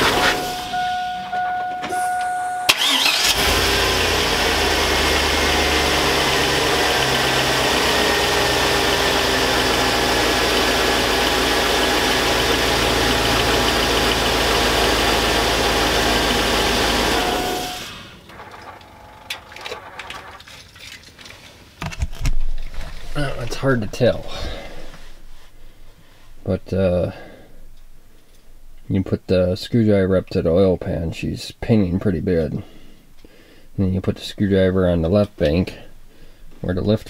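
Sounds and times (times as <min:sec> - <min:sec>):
car engine cranking and starting: 0:00.0 - 0:20.4
car engine idling: 0:00.0 - 0:20.4.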